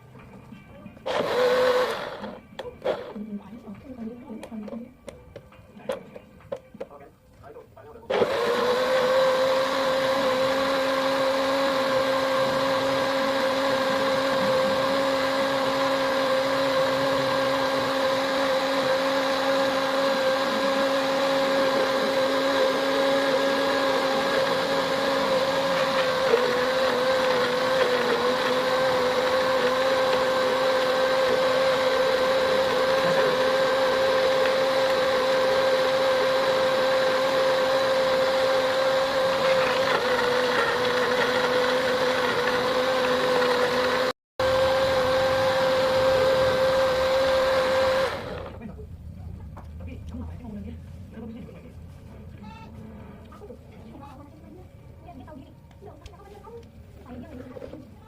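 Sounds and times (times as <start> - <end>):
electric blender grinding: 1.0 - 3.2, 8.1 - 48.6.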